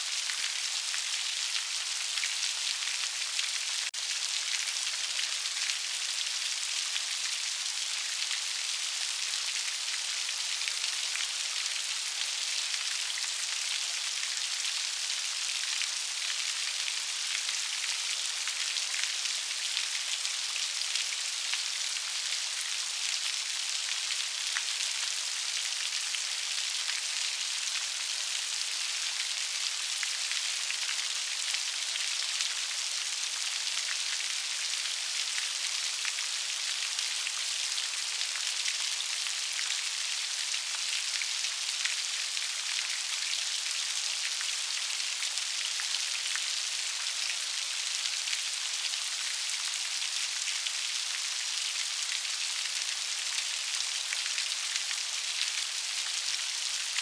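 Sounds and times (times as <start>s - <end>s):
steady rain hiss: 0.0s - 2.0s.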